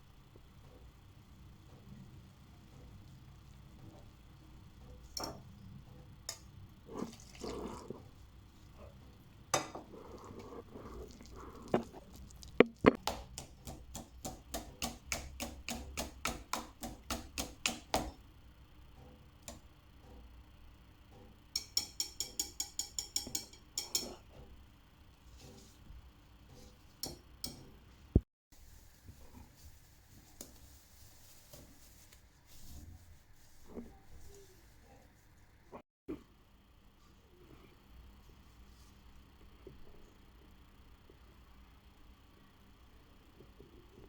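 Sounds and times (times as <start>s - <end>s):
utensil knocking on cookware: 21.6s - 24.2s.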